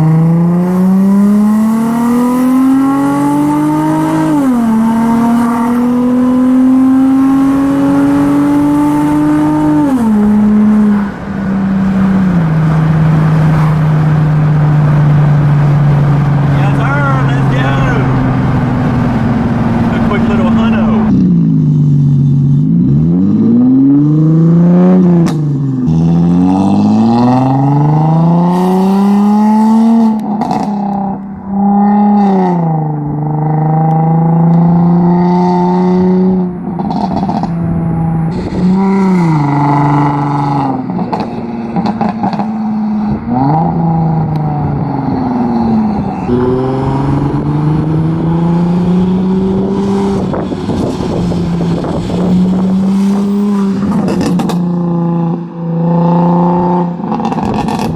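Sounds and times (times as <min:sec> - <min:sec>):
car engine revving through gears: 0:00.0 - 0:57.9.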